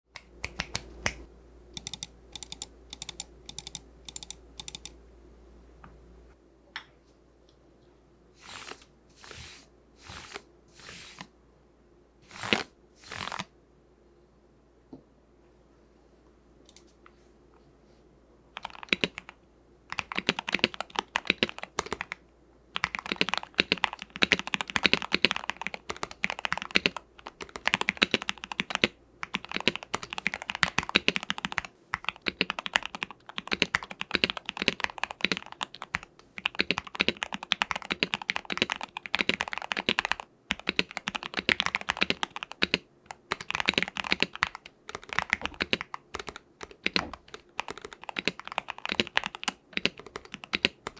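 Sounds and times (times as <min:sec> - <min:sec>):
mechanical keyboard typing: 0:01.8 - 0:05.0, 0:18.6 - 0:19.3, 0:19.9 - 0:22.2, 0:22.8 - 0:50.9.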